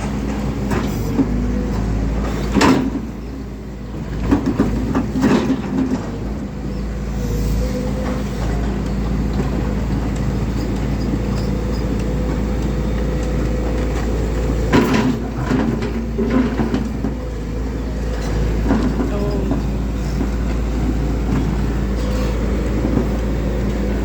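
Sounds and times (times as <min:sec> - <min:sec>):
excavator diesel engine running: 0:00.0 - 0:24.0
knocks and clatter: 0:04.1 - 0:06.2, 0:08.0 - 0:17.2, 0:18.1 - 0:23.3.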